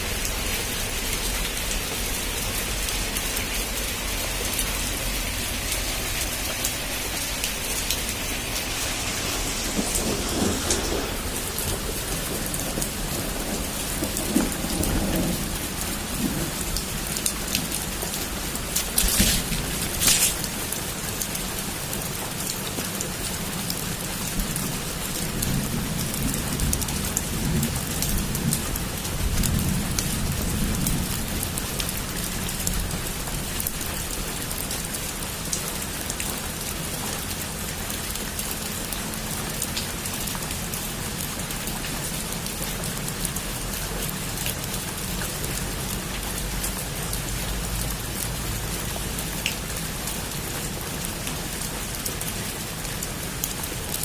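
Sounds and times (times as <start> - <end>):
heavy rain on a roof: 0.0 - 54.0
low rumble: 4.8 - 20.6.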